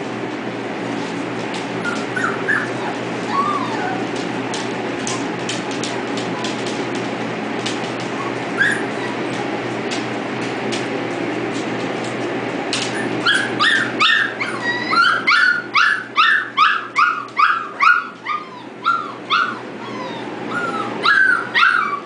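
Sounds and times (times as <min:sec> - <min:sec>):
puppies yipping and whimpering: 0:01.8 - 0:04.2, 0:08.1 - 0:09.3, 0:12.9 - 0:22.0.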